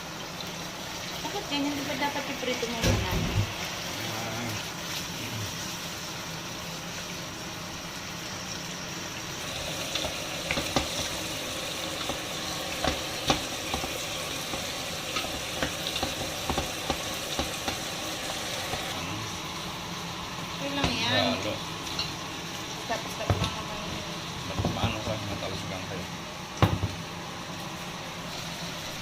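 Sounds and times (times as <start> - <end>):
food sizzling in hot oil: 0.0 - 29.0
oil popping: 9.4 - 19.0.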